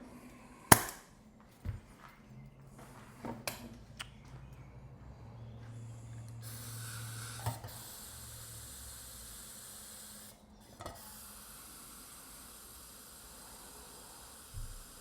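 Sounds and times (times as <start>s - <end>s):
air hissing from tube valve: 5.8s - 15.0s.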